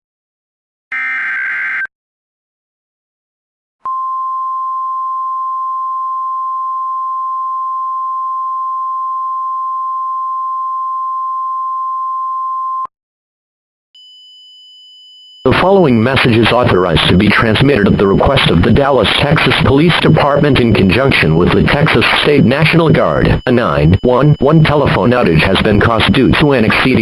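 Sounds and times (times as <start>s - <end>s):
faint high beep: 3.9s - 12.9s, 17.8s - 27.0s
steady warning alarm tone: 14.0s - 27.0s.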